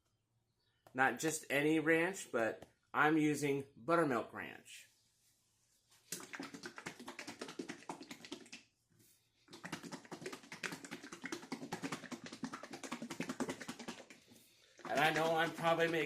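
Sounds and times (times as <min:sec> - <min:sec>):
plastic bottle shaken sloshing: 0:06.0 - 0:08.7, 0:09.5 - 0:16.0.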